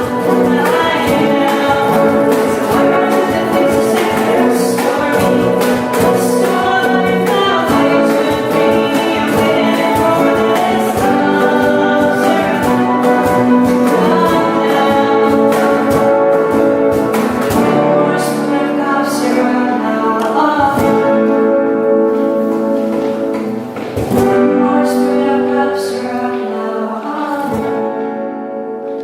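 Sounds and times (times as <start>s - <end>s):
steady drum beat: 0.0s - 18.4s
voices singing: 0.0s - 22.1s, 23.2s - 28.3s
instrumental accompaniment: 0.0s - 29.0s.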